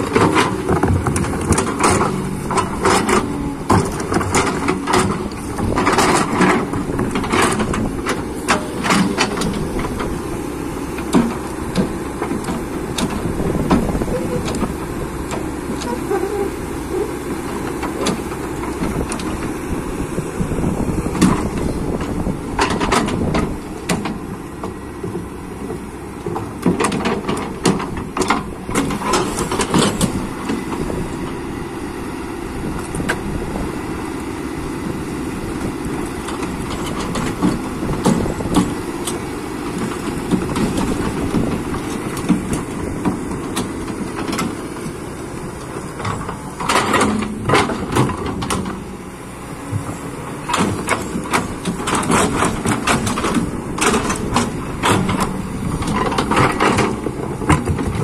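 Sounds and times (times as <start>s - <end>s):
excavator diesel engine running: 0.0s - 58.0s.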